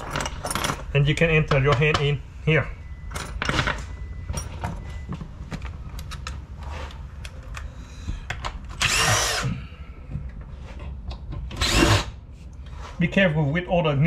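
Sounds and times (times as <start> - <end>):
tools and metal parts clicking: 0.0 - 2.0
cordless drill spinning: 8.8 - 9.5, 11.6 - 12.1.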